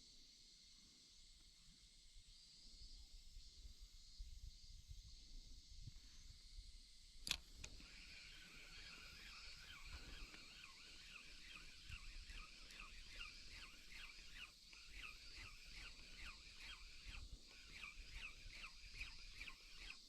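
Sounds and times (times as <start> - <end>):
faint quick chirping calls: 2.3 - 20.0
sharp click: 7.2 - 7.9.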